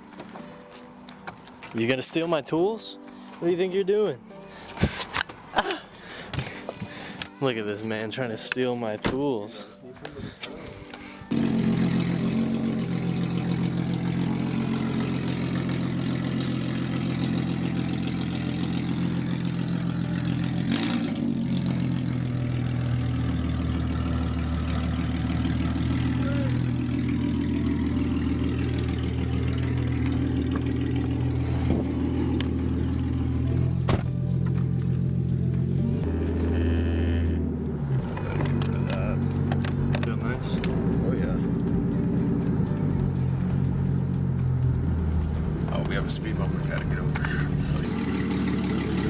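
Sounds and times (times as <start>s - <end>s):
car engine running: 11.2s - 49.0s.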